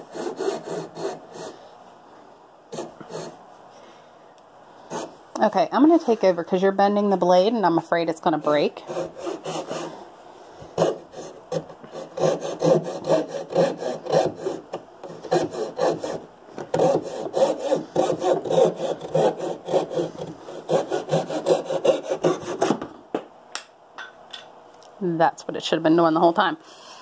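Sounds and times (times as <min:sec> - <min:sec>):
saw cutting wood: 0:00.0 - 0:01.6, 0:02.7 - 0:03.4, 0:08.5 - 0:10.0, 0:10.7 - 0:22.8.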